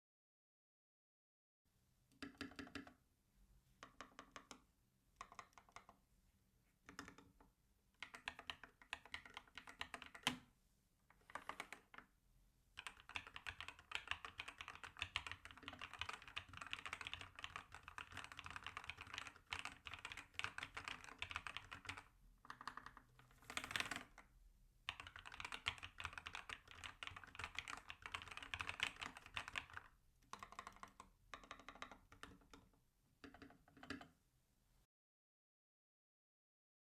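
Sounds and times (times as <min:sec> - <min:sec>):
mechanical keyboard typing: 0:02.2 - 0:03.0, 0:05.2 - 0:06.0, 0:06.9 - 0:07.4, 0:08.0 - 0:10.4, 0:11.2 - 0:12.0, 0:12.8 - 0:24.2, 0:24.9 - 0:34.2.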